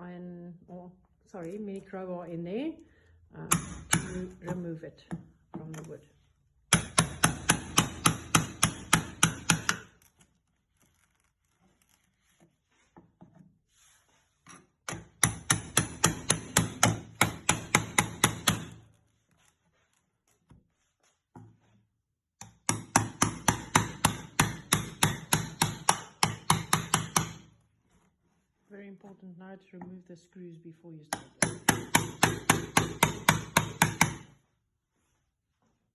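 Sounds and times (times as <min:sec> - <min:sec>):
hammer tapping metal crowbar: 0:03.5 - 0:05.9.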